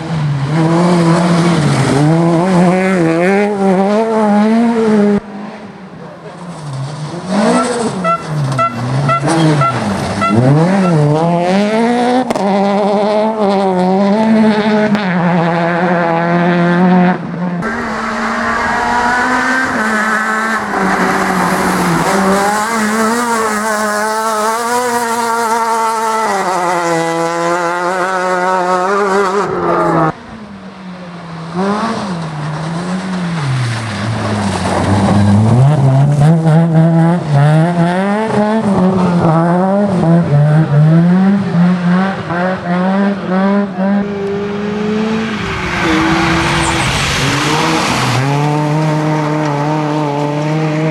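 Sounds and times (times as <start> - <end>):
rally car engines revving: 0.0 - 50.9
tyre squeal: 17.6 - 23.6, 44.0 - 47.9.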